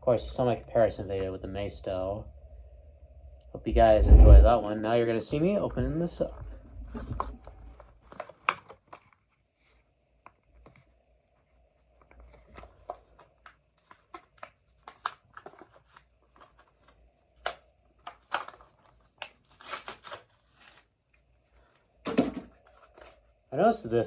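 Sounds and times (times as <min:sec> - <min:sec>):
plastic and cardboard package tearing: 0:07.4 - 0:09.3, 0:12.4 - 0:20.9.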